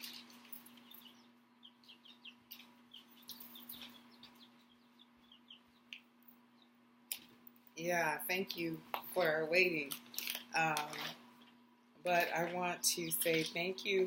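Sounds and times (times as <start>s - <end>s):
low electrical hum: 0.0s - 14.0s
faint bird chirps: 0.1s - 6.8s.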